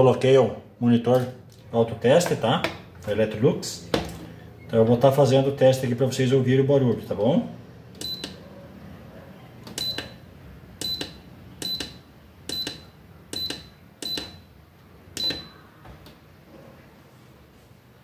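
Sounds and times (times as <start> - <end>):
short high-pitched electronic beeps: 9.8 - 10.2, 10.8 - 14.5, 15.2 - 15.6.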